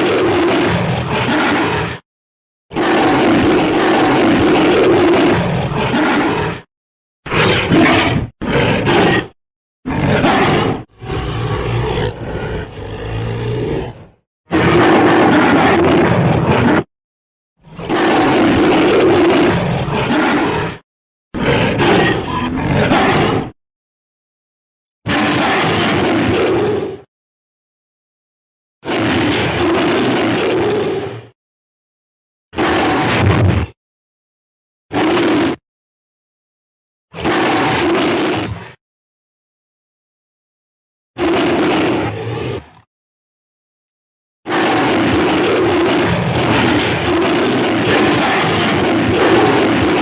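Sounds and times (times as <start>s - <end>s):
monster roaring: 0.0s - 2.0s, 2.7s - 6.7s, 7.3s - 16.9s, 17.6s - 20.8s, 21.4s - 23.6s, 25.1s - 27.1s, 28.8s - 31.4s, 32.6s - 33.8s, 34.9s - 35.6s, 37.1s - 38.8s, 41.2s - 42.9s, 44.5s - 50.0s.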